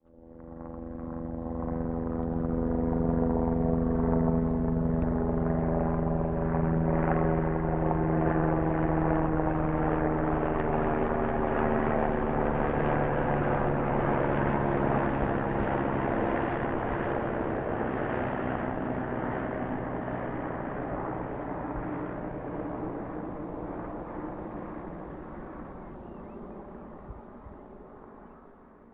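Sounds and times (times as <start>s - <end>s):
helicopter flying by: 0.0s - 28.9s.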